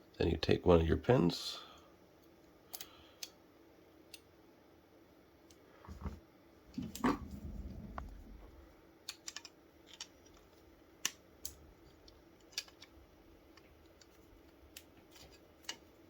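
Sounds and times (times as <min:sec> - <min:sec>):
small clicks and taps: 0:09.0 - 0:16.0.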